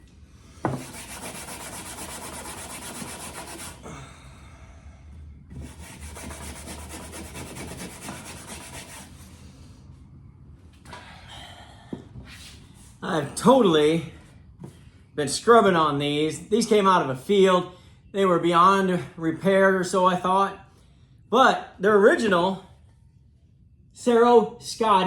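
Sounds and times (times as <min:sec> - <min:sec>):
knock: 0:00.6 - 0:00.9
steel wool scrubbing metal: 0:00.8 - 0:03.8.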